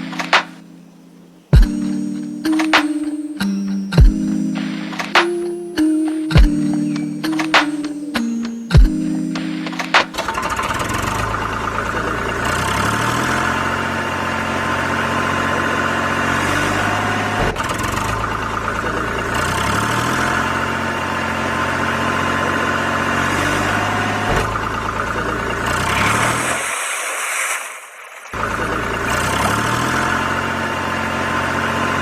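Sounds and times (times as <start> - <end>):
engine idling: 10.1 - 26.5, 28.4 - 32.0.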